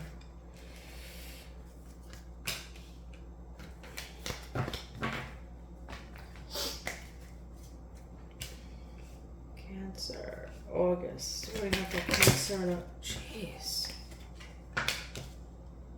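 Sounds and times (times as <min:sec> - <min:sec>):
low room hum: 0:00.0 - 0:15.9
cards being shuffled: 0:01.7 - 0:09.2, 0:11.4 - 0:12.8, 0:13.8 - 0:15.4.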